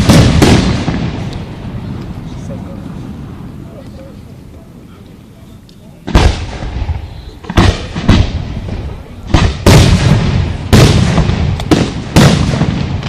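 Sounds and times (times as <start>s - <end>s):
fireworks booming: 0.0s - 3.8s, 5.9s - 13.0s.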